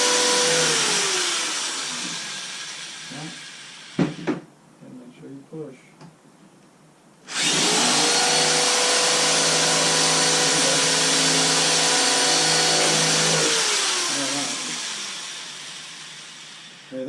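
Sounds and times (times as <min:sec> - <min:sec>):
electric drill boring into wood: 0:00.0 - 0:04.4, 0:07.3 - 0:17.0.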